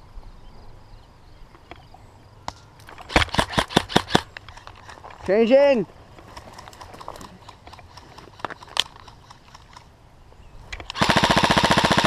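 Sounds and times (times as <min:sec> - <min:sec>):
airsoft rifle full-auto burst: 0:03.1 - 0:04.3, 0:10.9 - 0:12.0.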